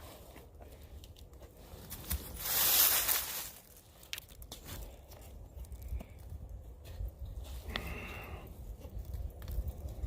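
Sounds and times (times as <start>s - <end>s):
steady low rumble: 0.5s - 10.0s.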